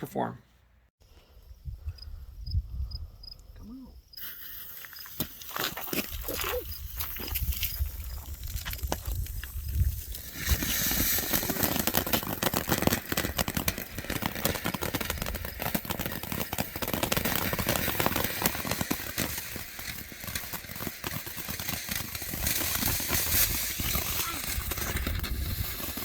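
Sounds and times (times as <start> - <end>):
fountain firework crackling hiss: 8.3 - 26.0.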